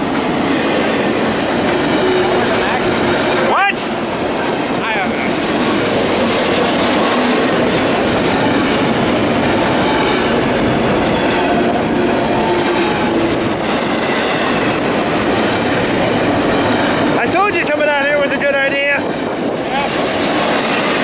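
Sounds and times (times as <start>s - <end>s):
clickety-clack over rail joints: 0.0s - 21.0s
train wheels rumbling on rails: 0.0s - 21.0s.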